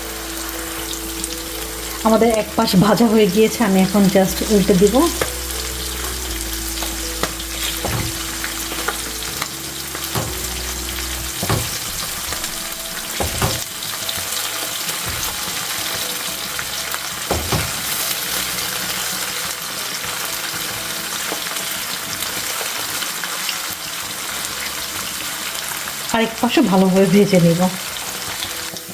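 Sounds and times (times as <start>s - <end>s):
fish sizzling in hot oil: 0.0s - 28.9s
utensil clicking against pan: 6.8s - 16.1s.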